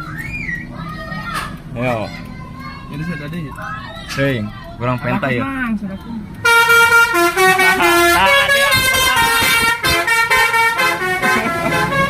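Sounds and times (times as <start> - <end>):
multi-tone air horn playing a tune: 6.4 - 12.0.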